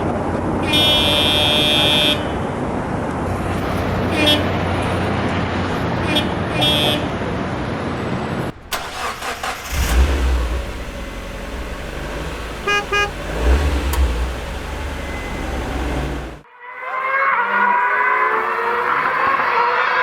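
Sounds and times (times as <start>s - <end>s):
traffic and engine noise: 0.0s - 20.0s
vehicle horns honking: 0.6s - 2.3s, 3.9s - 4.8s, 5.9s - 7.2s, 8.7s - 18.8s
low engine rumble: 7.3s - 16.4s.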